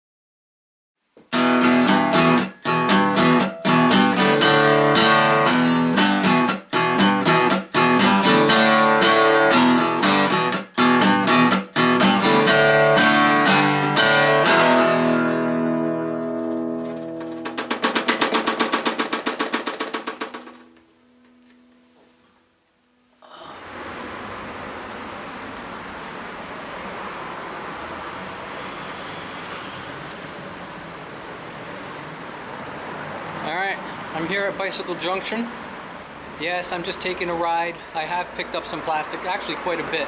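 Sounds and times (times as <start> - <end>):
acoustic guitar strumming: 1.2 - 23.3.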